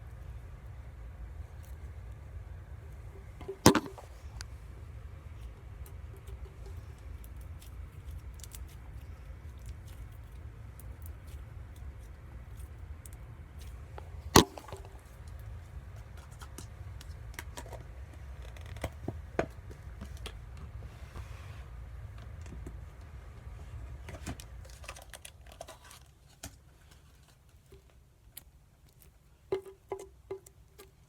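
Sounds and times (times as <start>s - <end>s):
low hum: 0.0s - 25.1s.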